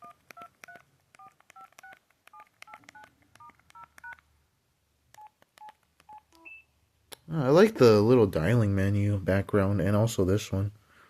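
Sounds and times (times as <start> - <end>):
phone keypad touch tones: 0.0 - 4.2, 5.1 - 6.7.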